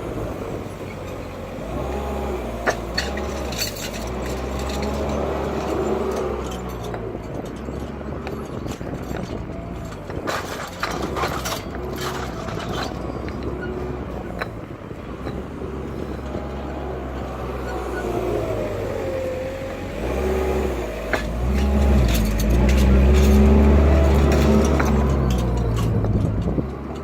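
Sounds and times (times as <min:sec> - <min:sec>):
heavy machinery engine running: 0:00.0 - 0:27.0.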